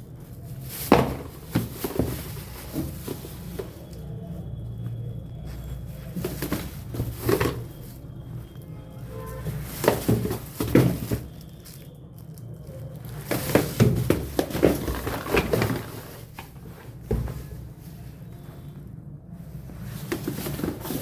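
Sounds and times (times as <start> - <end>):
packaging crinkling and tapping: 9.7 - 16.6.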